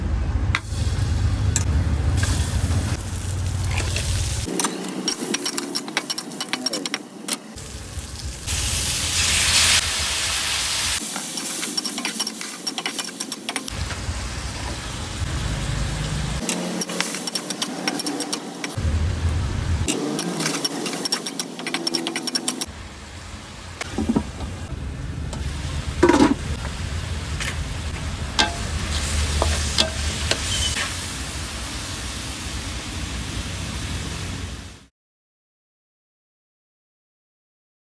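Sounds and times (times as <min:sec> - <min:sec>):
gas burner rumble: 0:00.0 - 0:04.5, 0:22.7 - 0:34.8
food frying in hot oil: 0:00.6 - 0:04.5, 0:07.6 - 0:21.4, 0:22.2 - 0:34.9
utensil clunks: 0:23.8 - 0:24.6, 0:26.0 - 0:26.6.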